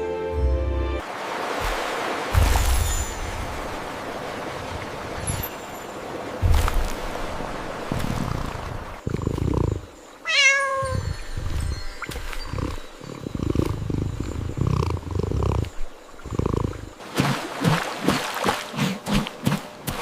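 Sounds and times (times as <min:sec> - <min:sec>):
cat purring: 0:09.0 - 0:09.8, 0:12.5 - 0:16.9
cat meow: 0:10.2 - 0:11.0.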